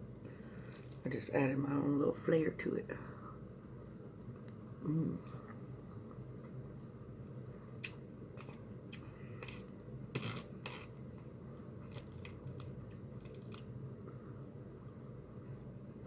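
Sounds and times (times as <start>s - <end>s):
low room hum: 0.0s - 16.0s
crackly bites: 11.8s - 14.2s.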